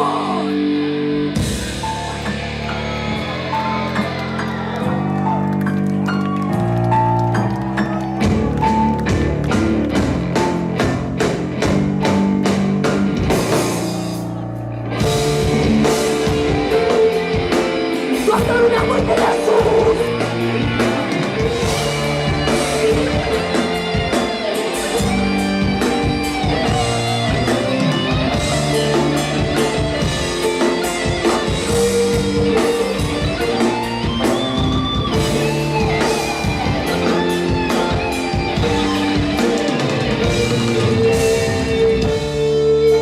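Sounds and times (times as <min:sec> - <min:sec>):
bass guitar: 0:00.0 - 0:43.0
drum kit: 0:00.0 - 0:43.0
electric guitar lead: 0:00.0 - 0:43.0.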